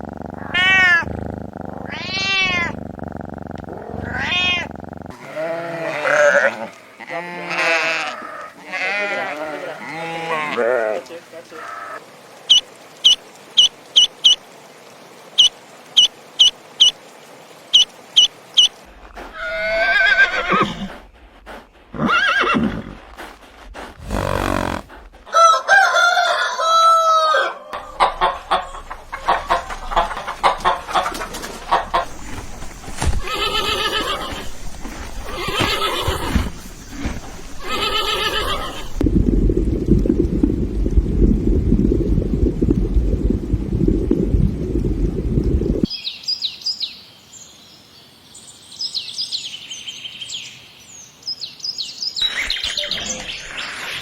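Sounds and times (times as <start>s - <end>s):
rooster crowing: 25.3s - 32.2s
poultry clucking: 27.7s - 39.0s.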